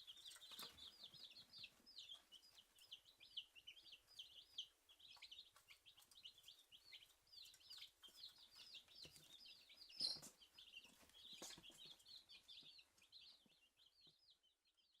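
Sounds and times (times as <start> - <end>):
chicks peeping: 0.0 - 15.0.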